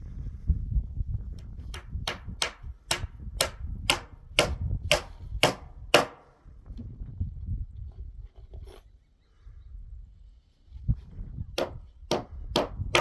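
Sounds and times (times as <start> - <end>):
sharp evenly spaced knocks: 1.6 - 6.3, 11.6 - 13.0.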